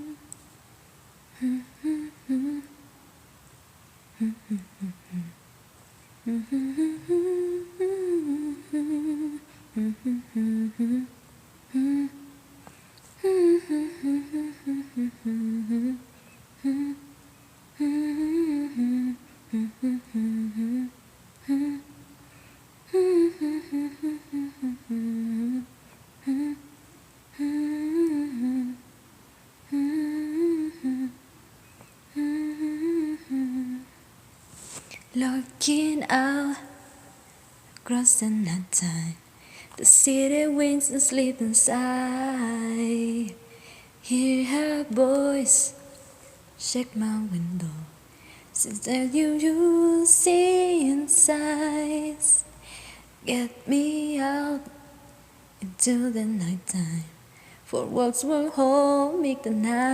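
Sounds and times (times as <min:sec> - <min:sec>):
person humming a melody: 0:00.0 - 0:00.4, 0:01.3 - 0:02.8, 0:04.2 - 0:05.4, 0:06.2 - 0:12.4, 0:13.2 - 0:17.1, 0:17.8 - 0:22.0, 0:22.9 - 0:26.7, 0:27.3 - 0:28.9, 0:29.7 - 0:31.2, 0:32.1 - 0:34.0.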